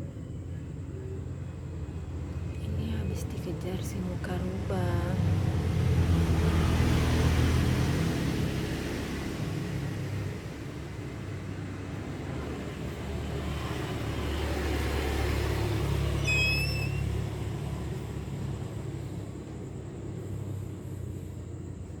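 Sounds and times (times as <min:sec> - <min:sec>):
passing vehicle rumble: 0:00.0 - 0:22.0
brief high squeak: 0:16.2 - 0:17.4.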